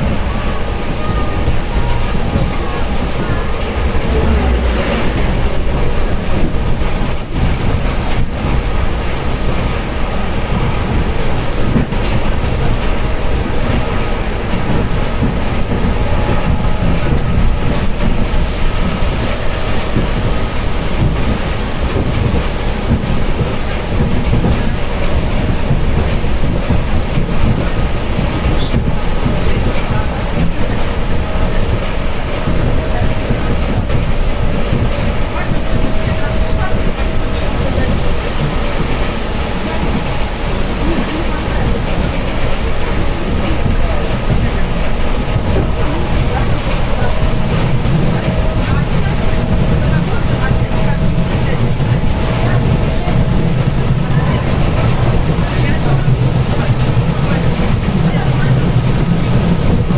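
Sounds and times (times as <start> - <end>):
train wheels rumbling on rails: 0.0 - 59.9.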